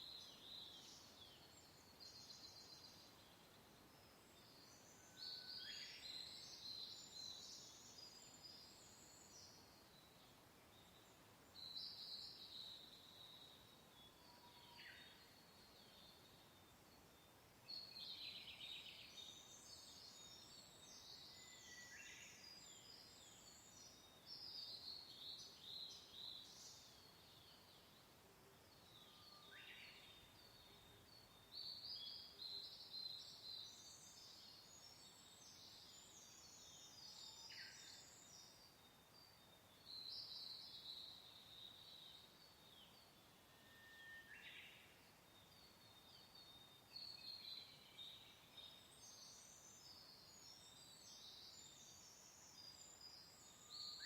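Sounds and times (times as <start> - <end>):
gentle wind hiss: 0.0 - 54.0.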